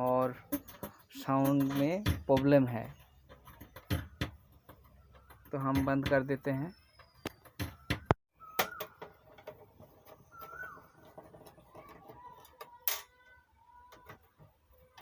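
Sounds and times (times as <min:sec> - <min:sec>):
equipment clicks and knocks: 0:00.0 - 0:10.2
faint bird chirps: 0:05.0 - 0:09.2, 0:10.0 - 0:12.4.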